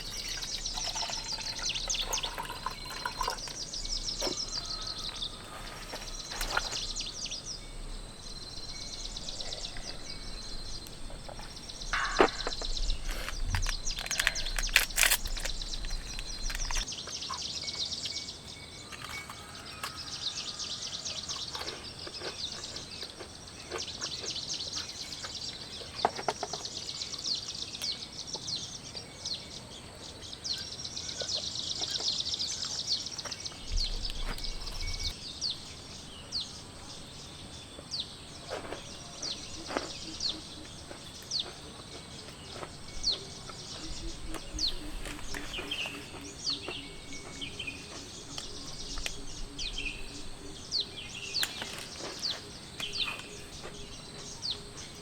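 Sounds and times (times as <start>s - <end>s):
birds chirping: 0.0s - 55.0s
background hiss: 26.6s - 55.0s.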